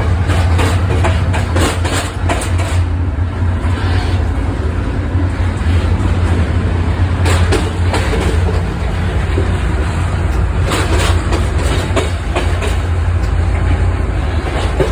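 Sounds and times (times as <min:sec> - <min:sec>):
wheel clacks over rail joints: 0:00.0 - 0:02.9, 0:05.3 - 0:14.9
train running low hum: 0:00.0 - 0:14.9.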